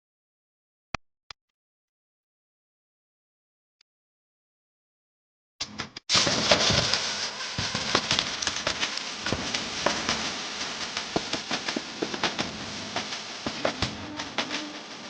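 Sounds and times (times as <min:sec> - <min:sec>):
food frying in hot oil: 0:06.1 - 0:15.0.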